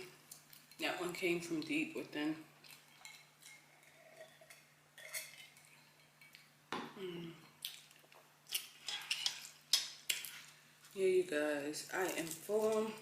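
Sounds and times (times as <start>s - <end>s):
cutlery and dishes clinking: 2.9s - 6.4s, 8.8s - 10.4s.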